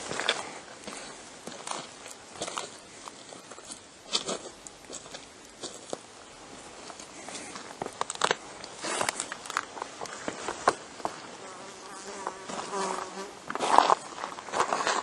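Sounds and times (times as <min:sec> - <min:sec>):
footsteps crunching on dry ground: 0:00.0 - 0:15.0
flying insect buzzing: 0:11.3 - 0:13.6.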